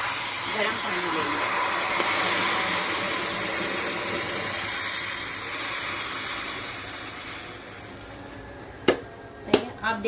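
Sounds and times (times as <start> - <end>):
hot water hissing in a pan: 0.0 - 8.6.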